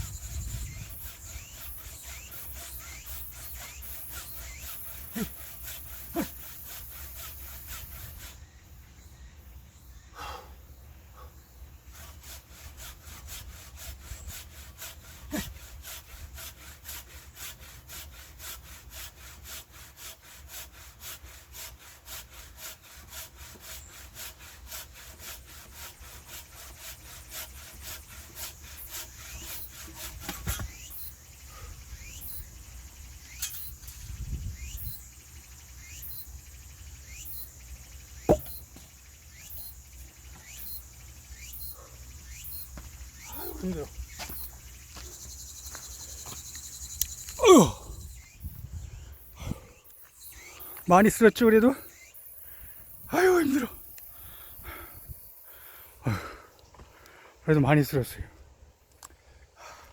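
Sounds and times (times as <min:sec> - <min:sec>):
hand saw cutting wood: 0:00.1 - 0:08.4, 0:11.9 - 0:47.7
dull knocks: 0:38.3 - 0:38.9.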